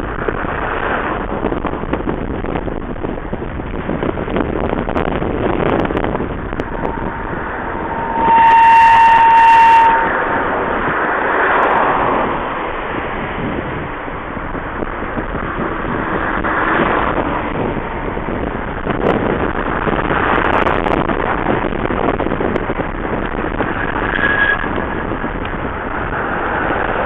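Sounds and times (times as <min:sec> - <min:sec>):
wind blowing in gusts: 0:00.0 - 0:27.0.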